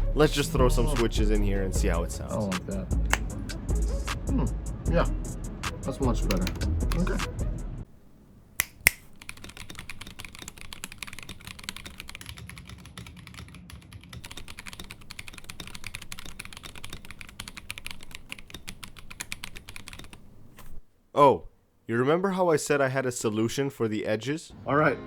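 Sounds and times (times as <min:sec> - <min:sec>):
mechanical keyboard typing: 0:06.3 - 0:07.2, 0:08.5 - 0:20.8.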